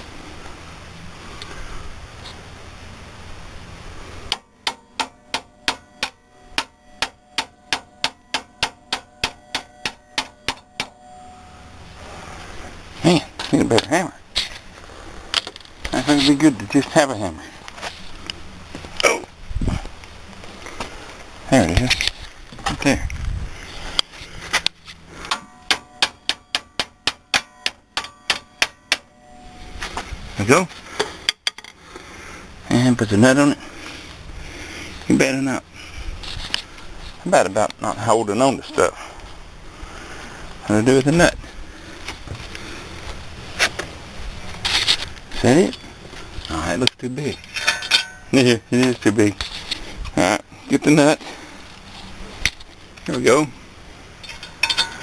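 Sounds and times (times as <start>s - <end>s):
hammer striking metal: 4.3s - 11.2s, 25.3s - 29.2s, 47.6s - 48.3s, 54.4s - 55.0s
ringing metal taps: 4.3s - 11.2s, 25.3s - 29.2s, 47.4s - 48.3s, 54.2s - 55.0s.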